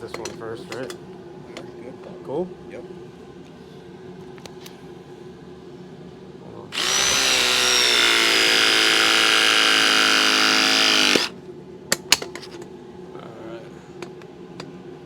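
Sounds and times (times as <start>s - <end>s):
press tool motor whining: 6.8s - 11.3s.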